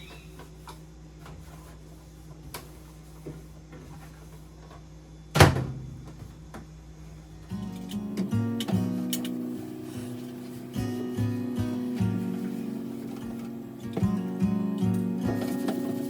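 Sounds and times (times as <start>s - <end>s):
cupboard door shutting: 5.4s - 6.2s
guitar music: 7.5s - 16.0s.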